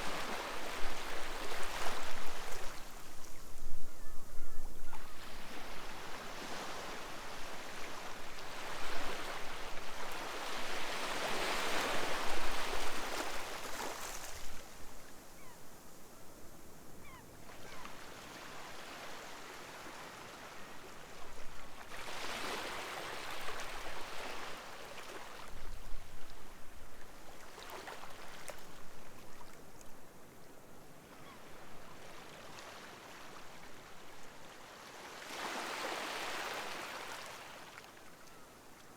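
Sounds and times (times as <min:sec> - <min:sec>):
sea waves breaking on shore: 0:21.6 - 0:25.6, 0:34.6 - 0:37.9.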